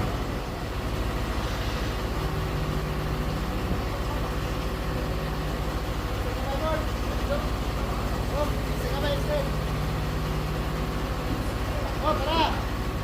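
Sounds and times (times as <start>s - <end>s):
truck engine idling: 0.0s - 13.0s.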